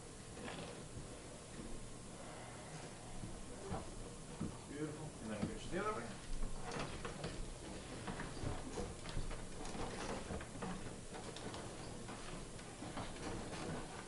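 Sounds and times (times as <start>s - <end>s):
small irregular clicks and taps: 6.3s - 14.0s.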